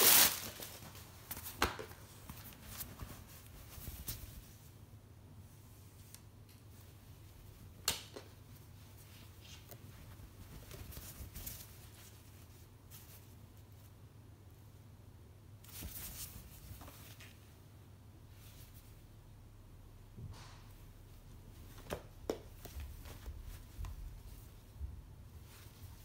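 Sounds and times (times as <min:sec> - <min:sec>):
packaging rustling: 0:00.0 - 0:01.0
faint steady hum: 0:00.0 - 0:26.0.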